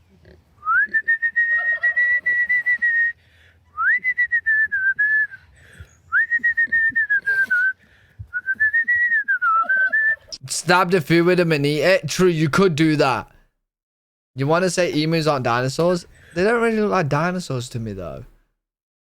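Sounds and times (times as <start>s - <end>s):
woman whistling: 3.8s - 5.4s, 6.1s - 10.3s.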